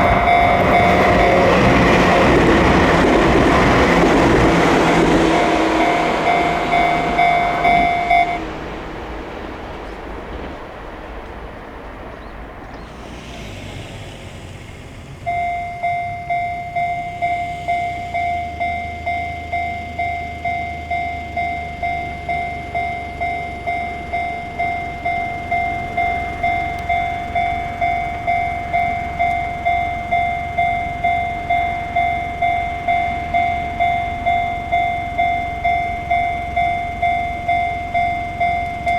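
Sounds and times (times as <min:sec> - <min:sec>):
level crossing alarm dinging: 0:00.0 - 0:09.2, 0:15.2 - 0:38.9
low rumble: 0:00.0 - 0:12.9
passing train: 0:00.0 - 0:38.9.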